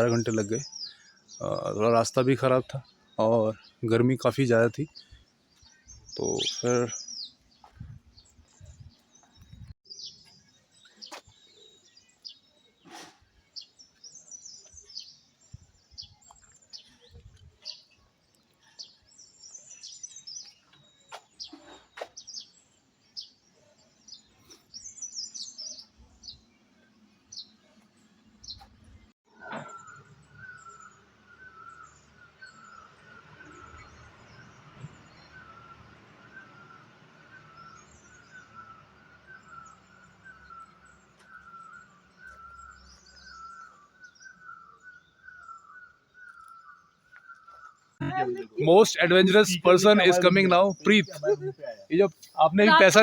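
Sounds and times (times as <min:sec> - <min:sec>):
small birds chirping: 0:00.0 - 0:53.0
bird trill: 0:29.3 - 0:53.0.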